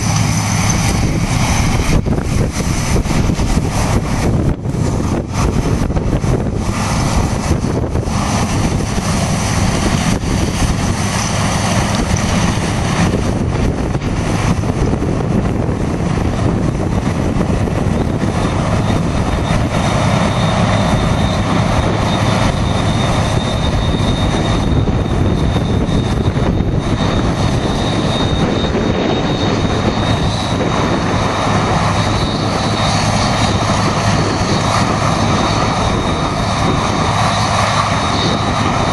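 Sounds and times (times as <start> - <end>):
farm machinery engine drone: 0.0 - 38.9
faint high whining tones: 17.9 - 38.9.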